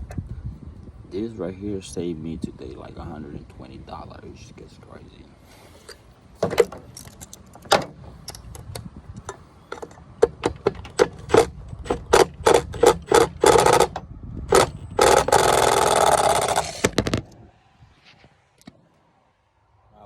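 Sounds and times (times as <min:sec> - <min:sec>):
garbage disposal rattling: 0:09.7 - 0:17.3.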